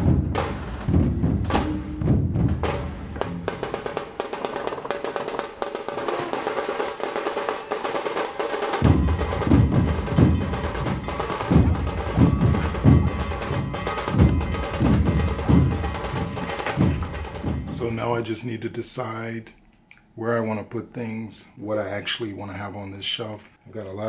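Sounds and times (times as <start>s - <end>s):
heavy low drum beat: 0.0s - 18.2s
woody percussive music: 0.0s - 18.3s.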